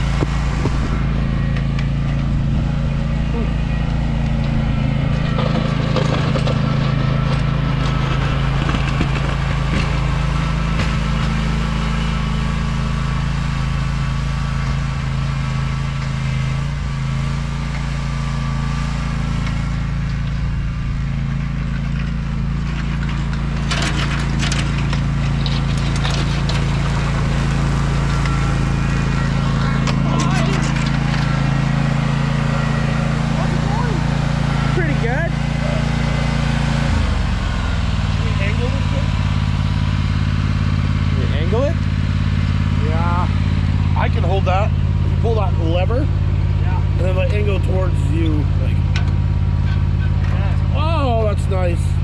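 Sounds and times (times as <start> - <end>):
sharp crackling clatter: 0.0 - 11.6, 19.4 - 45.4
mower engine running: 0.0 - 52.0.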